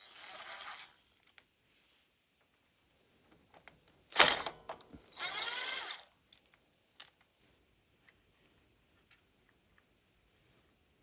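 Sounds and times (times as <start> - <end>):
tool ratcheting or whirring: 0.0 - 1.0, 4.2 - 6.1.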